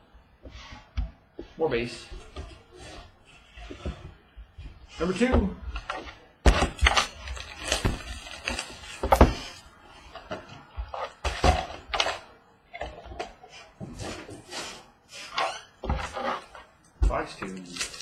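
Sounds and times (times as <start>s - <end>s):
wrapper and cardboard crinkling: 6.7s - 9.6s, 17.1s - 18.0s.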